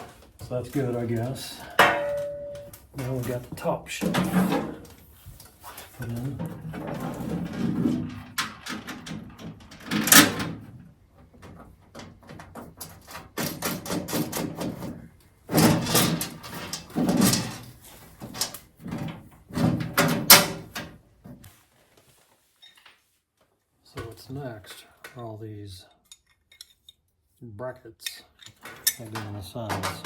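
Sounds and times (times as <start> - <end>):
metal parts clanking and rattling: 0.0 - 3.4, 4.0 - 5.0, 5.8 - 21.0, 26.0 - 27.0, 28.1 - 30.0
sharp metallic knocks: 1.7 - 2.8.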